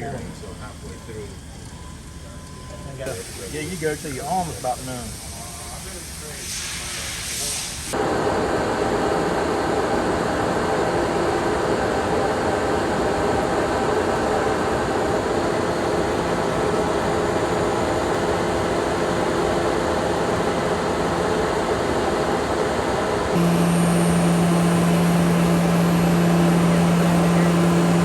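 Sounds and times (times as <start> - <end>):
planer machine humming: 8.0 - 28.0.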